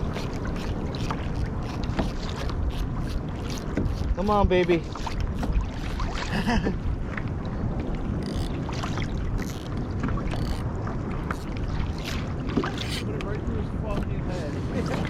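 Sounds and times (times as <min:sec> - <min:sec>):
small clicks and splashes: 0:00.0 - 0:06.3
water lapping against kayak hull: 0:00.0 - 0:15.0
wind buffeting microphone: 0:00.0 - 0:15.0.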